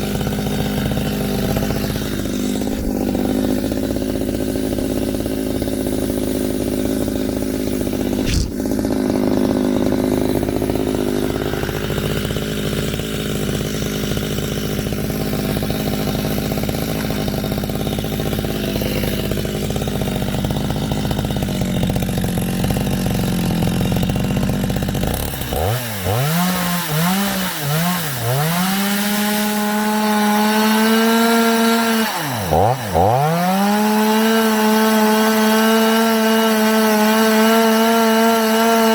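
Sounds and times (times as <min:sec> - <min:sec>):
chainsaw running: 0:00.0 - 0:38.9.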